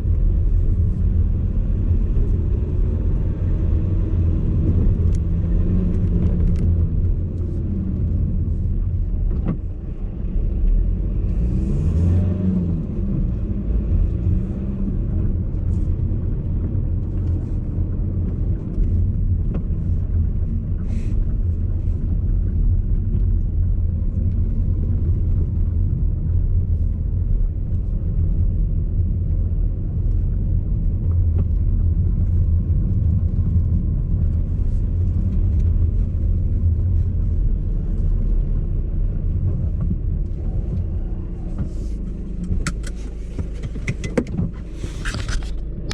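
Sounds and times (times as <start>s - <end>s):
car cabin low rumble: 0.0s - 45.9s
suspension knocks and rattles: 39.3s - 45.9s.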